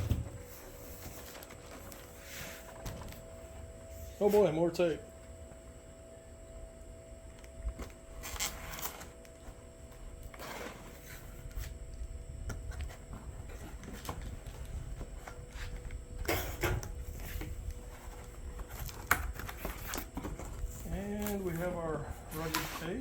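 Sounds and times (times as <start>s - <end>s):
packing tape pulled off: 8.2s - 9.4s
cardboard box rustling and scraping: 10.3s - 11.8s.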